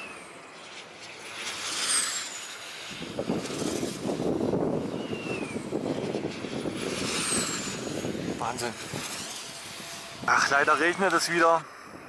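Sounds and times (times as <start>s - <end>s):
rough rushing noise: 0.0s - 12.0s
wind turbine blade whooshing: 0.0s - 12.0s
lower falling whistle: 4.8s - 6.0s
high falling whistle: 4.8s - 6.2s.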